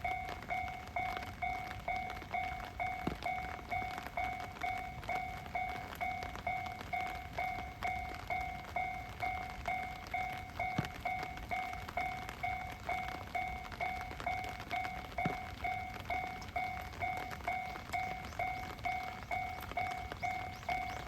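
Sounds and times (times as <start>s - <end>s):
level-crossing alarm bell: 0.0s - 21.0s.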